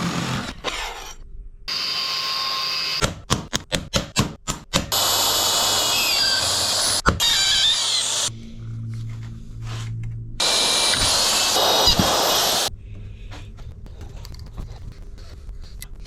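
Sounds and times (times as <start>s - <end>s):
electric drill motor whine: 1.7s - 3.0s, 5.0s - 8.3s, 10.4s - 12.7s.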